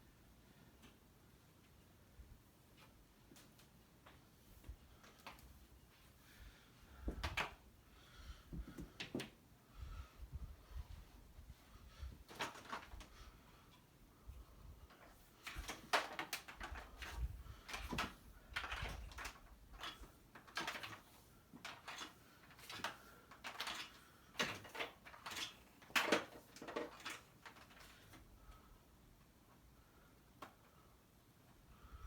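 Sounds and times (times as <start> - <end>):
objects knocking and rattling: 14.9 - 28.1.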